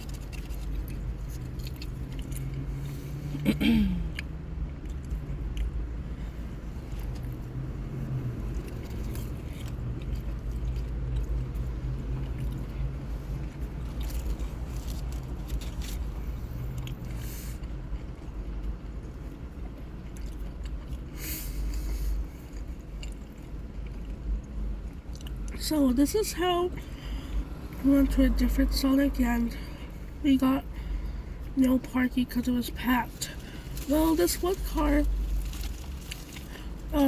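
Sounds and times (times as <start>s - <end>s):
person eating and chewing: 0.0s - 3.4s, 4.0s - 25.6s, 33.2s - 37.0s.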